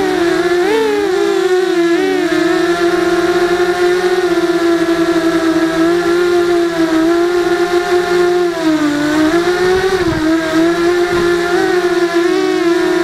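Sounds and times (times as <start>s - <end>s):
quadcopter motors whining: 0.0s - 13.0s.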